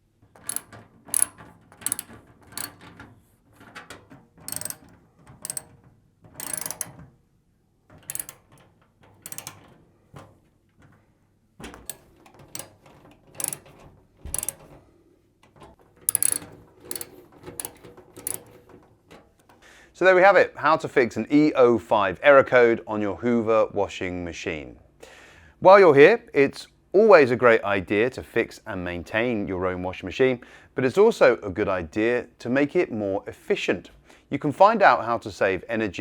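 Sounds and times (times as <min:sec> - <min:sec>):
ratchet clicking: 0:00.4 - 0:02.8, 0:04.5 - 0:05.7, 0:06.4 - 0:07.0, 0:08.0 - 0:08.6, 0:09.2 - 0:09.6, 0:11.8 - 0:12.8, 0:13.4 - 0:13.7, 0:14.3 - 0:14.7, 0:16.1 - 0:18.5.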